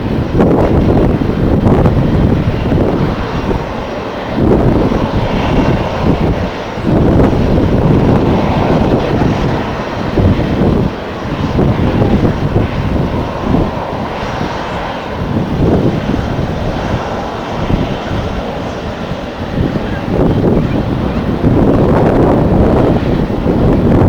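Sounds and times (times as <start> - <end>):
jet engines running: 0.0 - 24.0
wind buffeting microphone: 0.0 - 24.0.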